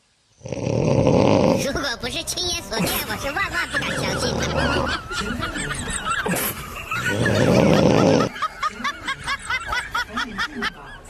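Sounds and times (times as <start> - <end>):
loud rough snore: 0.4 - 1.7, 3.8 - 5.0, 6.2 - 8.3
chuckling laughs: 3.4 - 11.0.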